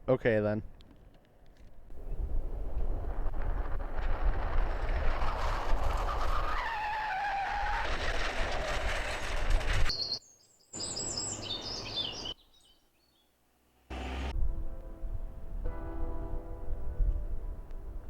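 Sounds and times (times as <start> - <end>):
tyres screeching: 6.3 - 10.1
high chirping: 9.9 - 13.2
street traffic: 13.7 - 14.4.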